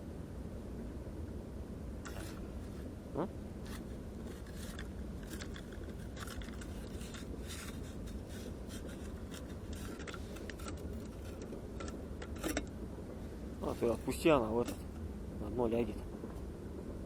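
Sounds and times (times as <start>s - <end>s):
scraping and rustling clicks: 2.0s - 2.8s, 3.6s - 12.7s, 13.6s - 15.0s.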